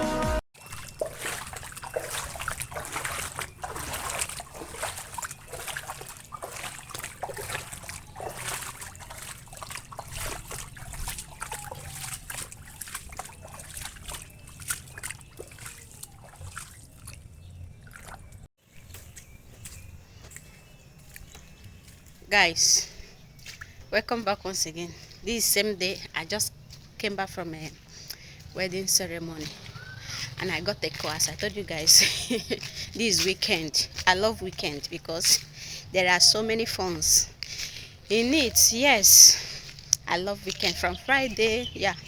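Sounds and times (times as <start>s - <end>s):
rain splashing on water: 0.6s - 18.4s
running water: 0.6s - 18.5s, 21.0s - 42.0s.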